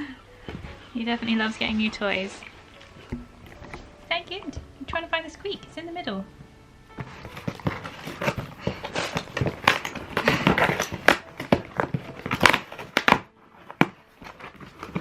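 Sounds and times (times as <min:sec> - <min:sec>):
packaging crinkling and tearing: 0:07.0 - 0:15.0.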